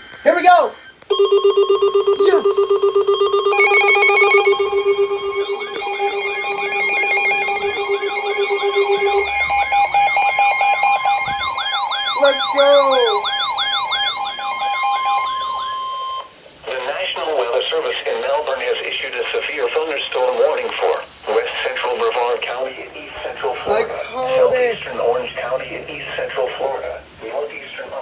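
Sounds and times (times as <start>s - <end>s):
stepped high beeping: 0.0s - 16.3s, 23.2s - 26.9s
steady electronic alarm tones: 0.0s - 16.4s, 22.9s - 27.1s
siren-like warble: 1.1s - 16.3s
steady low tone: 1.9s - 12.2s.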